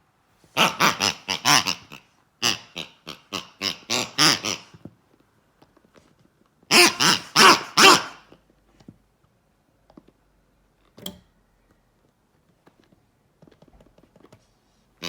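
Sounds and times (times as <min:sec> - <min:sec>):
pigs squealing short cries: 0:06.7 - 0:08.2.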